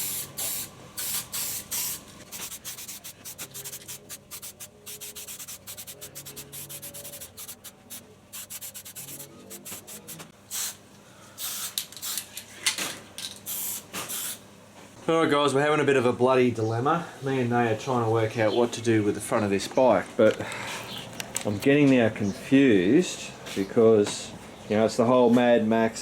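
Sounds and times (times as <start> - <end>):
spray paint bursts: 0.0 - 10.8, 11.4 - 12.2, 13.5 - 14.4.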